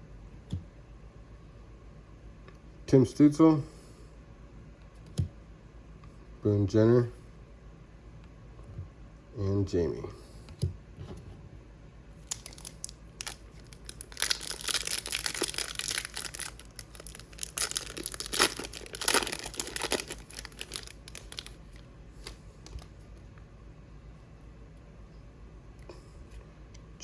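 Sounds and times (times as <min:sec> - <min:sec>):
wrapper crinkling and ripping: 0:12.2 - 0:22.9.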